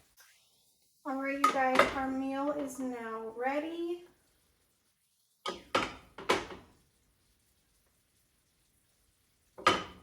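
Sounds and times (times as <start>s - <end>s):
cookware knocking and ringing: 9.6s - 10.0s.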